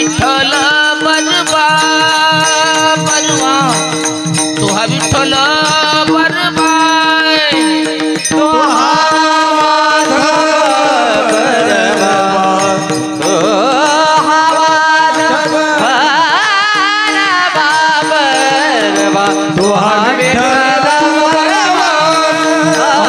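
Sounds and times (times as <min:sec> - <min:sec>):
man singing ornamented notes: 0:00.0 - 0:23.0.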